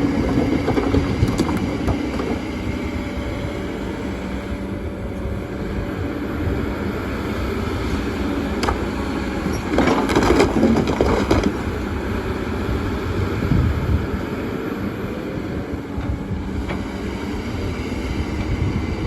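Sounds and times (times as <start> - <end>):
excavator diesel engine running: 0.0 - 19.0
stones knocking and scraping: 0.1 - 2.4.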